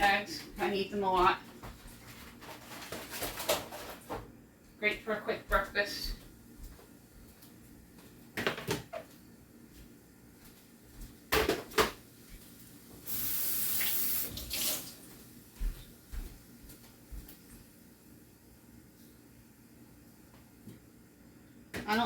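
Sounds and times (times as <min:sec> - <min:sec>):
items knocking and clattering: 0:01.7 - 0:04.3, 0:08.4 - 0:09.1, 0:11.3 - 0:12.0
steady hiss: 0:12.9 - 0:14.8.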